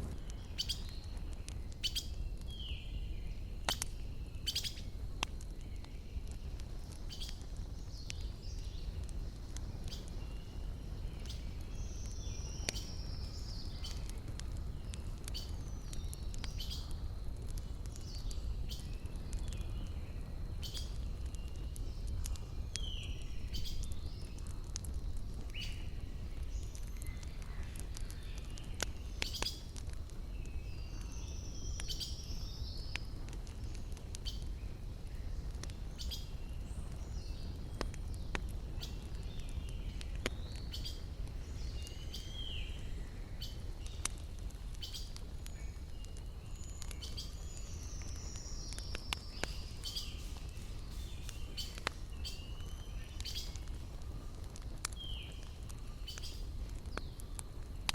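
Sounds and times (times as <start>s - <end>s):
campfire crackling and popping: 0.0s - 57.9s
birds chirping: 35.4s - 57.2s.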